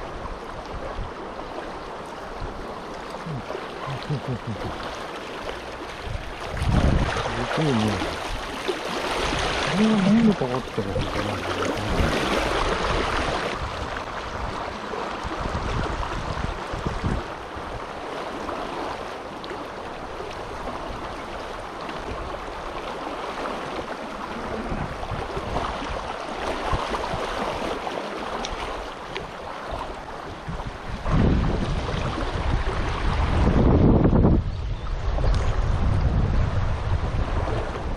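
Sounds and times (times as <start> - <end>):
river rushing over rapids: 0.0 - 30.9
wind buffeting microphone: 5.7 - 18.1, 23.7 - 27.8, 28.8 - 37.9.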